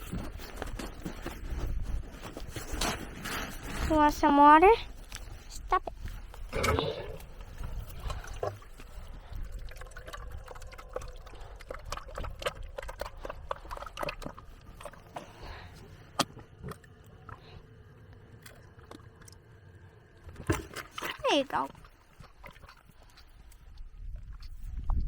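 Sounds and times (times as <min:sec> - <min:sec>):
water pouring into a container: 0:06.6 - 0:15.7.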